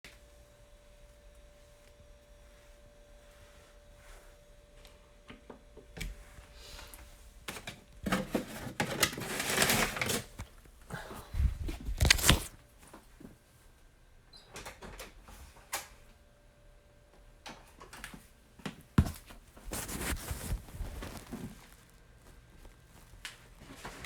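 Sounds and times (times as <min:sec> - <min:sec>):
rustling and clattering: 0:07.5 - 0:10.6, 0:19.1 - 0:24.0.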